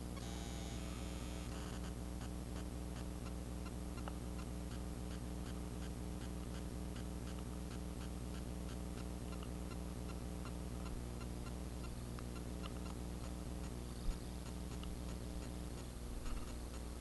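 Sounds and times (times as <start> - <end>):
constant low hum: 0.0 - 17.0
light ticks: 3.2 - 4.5, 9.3 - 16.8.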